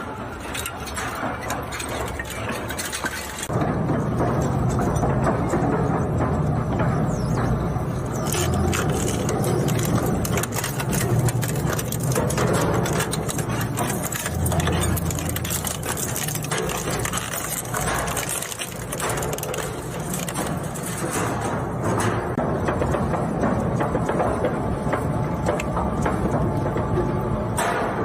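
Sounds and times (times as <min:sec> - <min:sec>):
plastic crackling and clatter: 0:00.0 - 0:03.6, 0:08.0 - 0:22.4.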